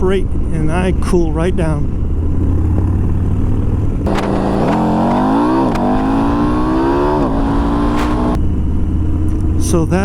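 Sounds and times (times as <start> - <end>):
motorcycle engine accelerating: 2.2 - 8.4.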